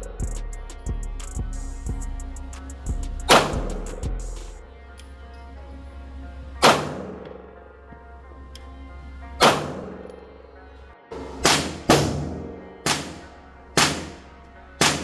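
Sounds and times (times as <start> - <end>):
pistol shots: 3.3 - 4.0, 6.6 - 7.3, 9.4 - 10.1, 11.1 - 15.0.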